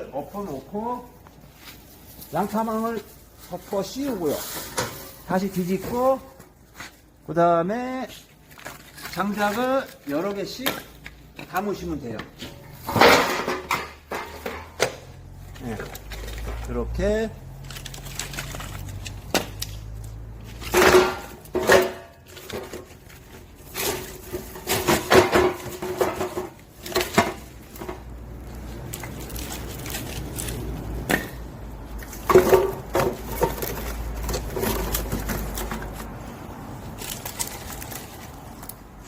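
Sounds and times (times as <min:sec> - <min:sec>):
firewood logs knocking on metal: 0:20.6 - 0:22.8.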